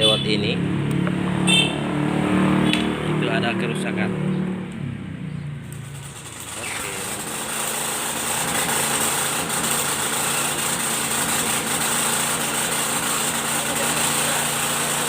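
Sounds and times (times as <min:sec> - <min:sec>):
petrol engine running: 0:04.7 - 0:15.0.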